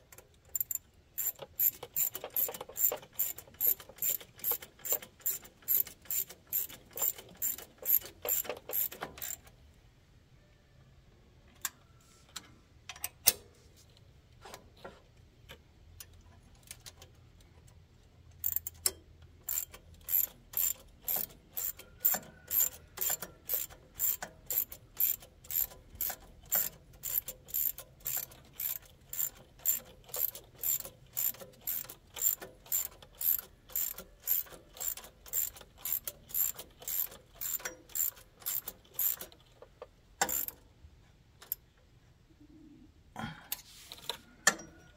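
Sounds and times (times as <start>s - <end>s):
ratchet wrench clicking: 0.5s - 9.4s, 18.4s - 39.5s, 40.2s - 40.6s.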